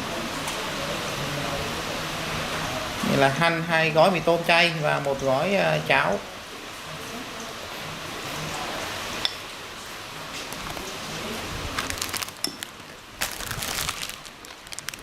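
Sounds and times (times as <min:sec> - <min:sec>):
packets crackling: 0:11.8 - 0:15.0.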